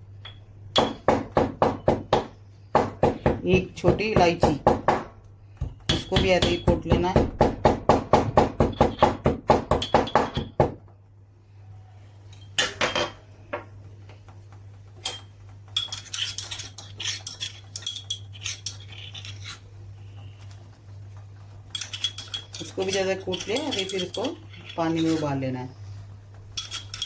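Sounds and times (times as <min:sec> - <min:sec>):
pestle pounding in a mortar: 0:00.8 - 0:10.8.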